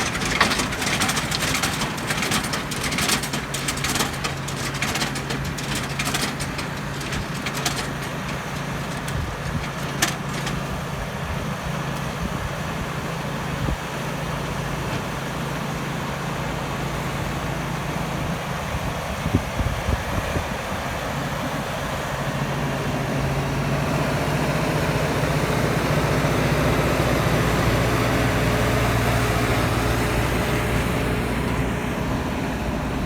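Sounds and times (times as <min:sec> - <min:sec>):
clattering: 0:00.0 - 0:10.8
tractor diesel engine running: 0:00.0 - 0:33.0.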